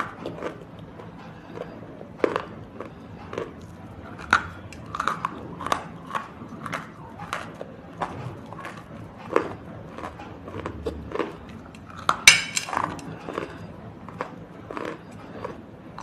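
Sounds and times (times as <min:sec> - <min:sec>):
crunchy food being bitten: 0:00.0 - 0:16.0
sharp ringing crack: 0:12.3 - 0:12.8.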